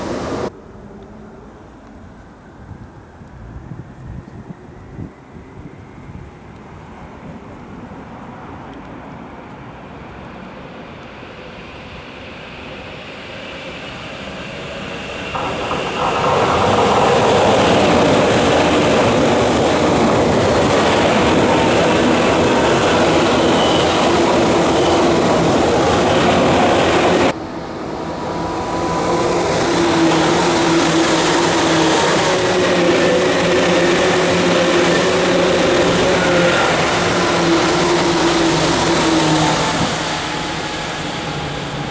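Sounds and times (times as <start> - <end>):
electric train running: 0.0 - 0.5, 11.2 - 41.9
traction motor and rail noise: 0.0 - 41.9.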